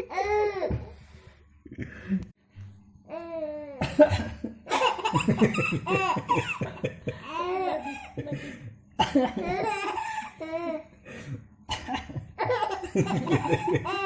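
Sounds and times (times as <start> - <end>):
child laughing: 12.4 - 14.0.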